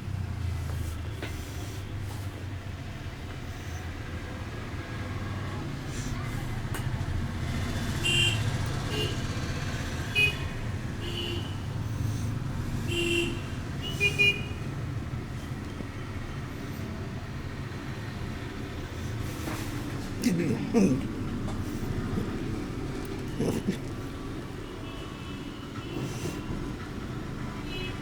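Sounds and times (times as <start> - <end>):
road traffic rumble: 0.0 - 28.0
vehicle horn toots: 10.1 - 11.7, 12.9 - 14.7.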